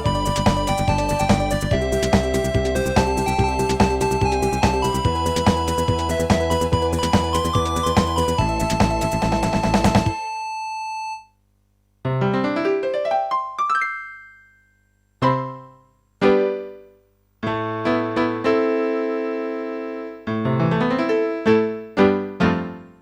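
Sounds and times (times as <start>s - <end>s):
electronic keyboard piano notes: 12.2s - 16.8s.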